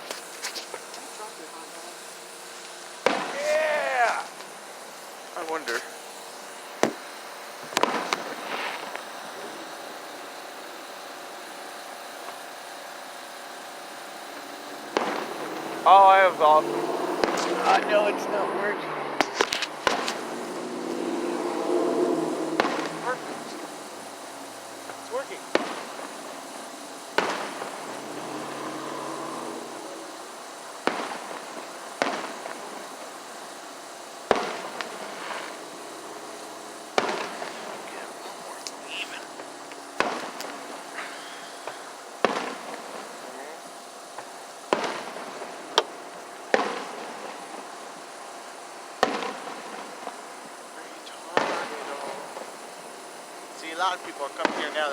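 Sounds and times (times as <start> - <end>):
firework bang: 0.0 - 54.9
firework crackle: 0.0 - 54.9
steady mechanical hum: 0.0 - 54.9
small firework pop: 6.8 - 7.0, 19.2 - 20.2, 38.6 - 42.8, 45.7 - 46.9, 49.0 - 49.5.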